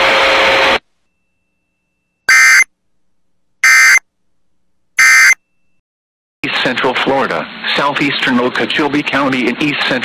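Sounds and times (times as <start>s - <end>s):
digital data tone bursts: 2.3s - 2.7s, 3.6s - 4.0s, 5.0s - 5.4s.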